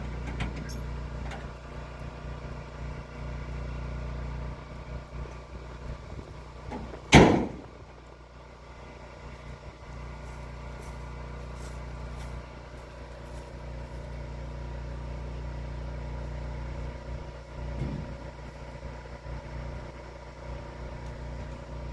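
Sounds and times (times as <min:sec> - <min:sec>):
pickup engine running: 0:00.0 - 0:21.9
loud sharp bang: 0:07.1 - 0:07.7.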